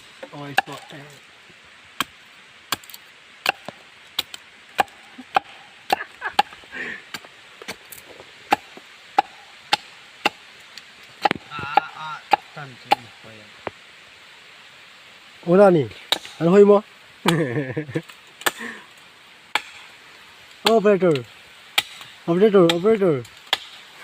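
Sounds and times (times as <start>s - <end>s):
axe chopping wood: 0.6s - 0.9s, 2.0s - 7.8s, 11.2s - 13.0s, 16.1s - 16.4s, 19.5s - 19.8s, 21.8s - 22.9s, 23.5s - 23.8s.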